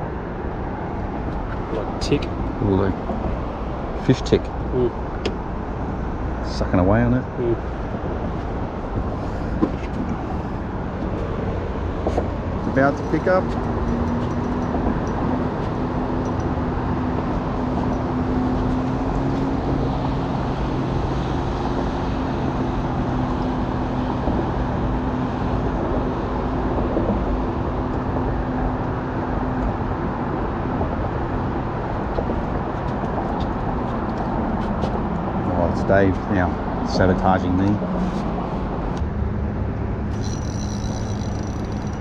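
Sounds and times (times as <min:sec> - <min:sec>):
motor rumble with low hum: 0:38.6 - 0:42.0.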